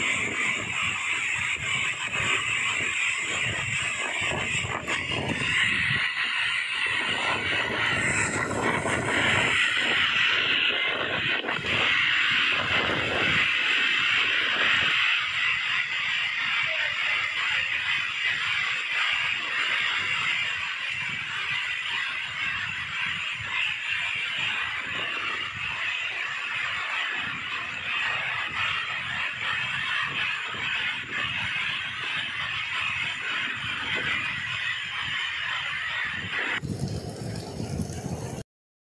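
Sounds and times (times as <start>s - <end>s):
heavy rain pouring: 36.6s - 38.4s.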